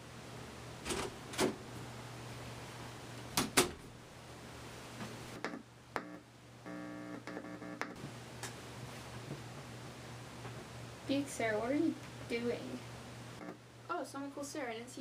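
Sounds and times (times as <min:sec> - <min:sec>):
steady buzzy beep: 0:05.4 - 0:08.0.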